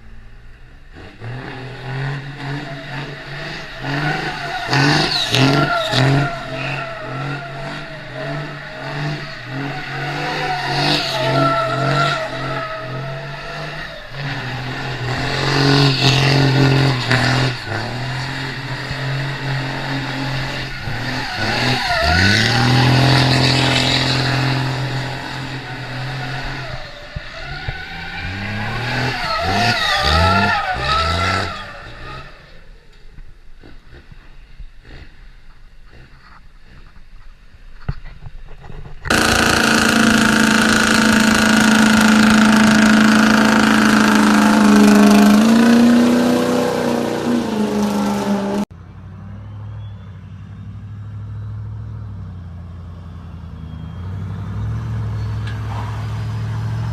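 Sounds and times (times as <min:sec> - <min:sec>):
diesel truck engine revving: 0:00.0 - 0:32.7, 0:39.1 - 0:48.7
tyres squealing: 0:03.0 - 0:31.8, 0:39.1 - 0:48.7.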